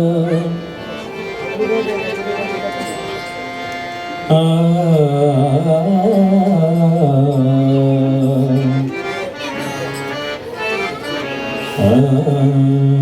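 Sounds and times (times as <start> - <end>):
man singing devotional song: 0.0 - 2.1, 4.1 - 9.2, 11.7 - 13.0
harmonium: 0.0 - 13.0.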